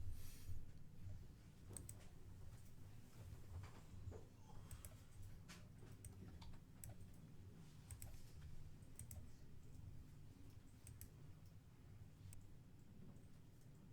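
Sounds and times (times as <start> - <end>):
computer mouse clicks: 1.8 - 2.0, 4.7 - 5.3, 7.9 - 8.2, 9.0 - 9.3, 10.5 - 11.1.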